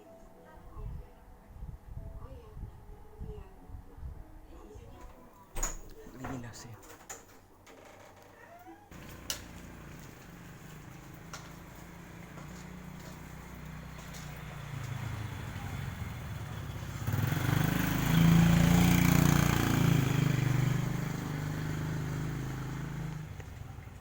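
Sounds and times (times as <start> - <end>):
passing motor vehicle engine: 8.9 - 24.0.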